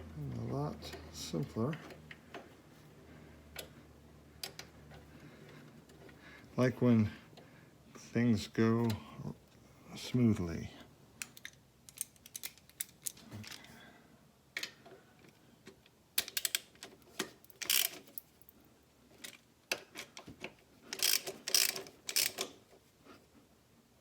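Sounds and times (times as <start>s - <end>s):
ratchet wrench clicking: 17.6s - 18.0s, 21.0s - 22.5s.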